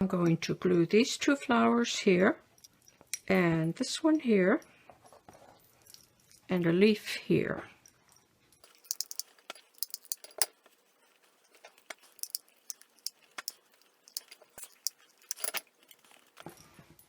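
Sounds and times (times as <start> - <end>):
clicks of handling craft pieces: 8.6 - 16.5.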